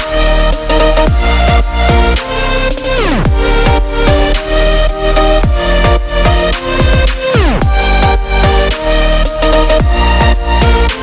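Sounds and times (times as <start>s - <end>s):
held synth chords: 0.0s - 11.0s
kick-drum beat: 1.1s - 2.2s, 3.3s - 4.5s, 5.4s - 8.8s, 9.8s - 11.0s.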